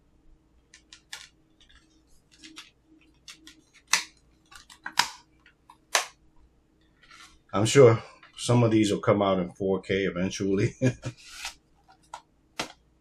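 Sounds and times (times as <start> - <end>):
plastic case clicks and rustles: 0.7 - 6.2.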